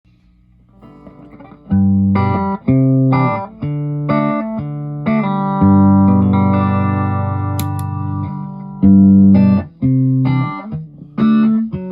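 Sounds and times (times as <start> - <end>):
electric guitar with flanger: 0.8 - 9.7.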